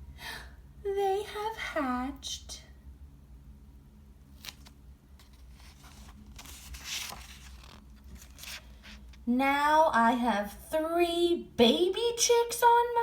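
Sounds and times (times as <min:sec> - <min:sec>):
steady low hum: 0:00.0 - 0:13.0
paper rustling: 0:04.4 - 0:09.2.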